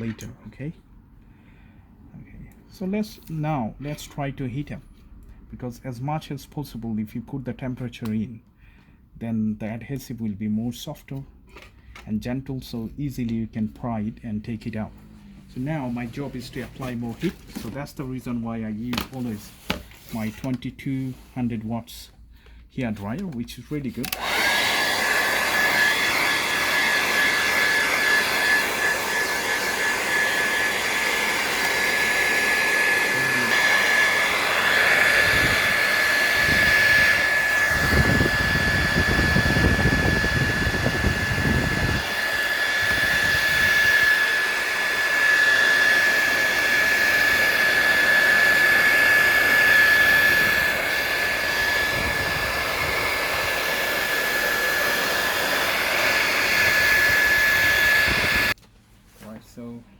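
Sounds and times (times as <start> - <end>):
hair dryer running: 23.8 - 58.6.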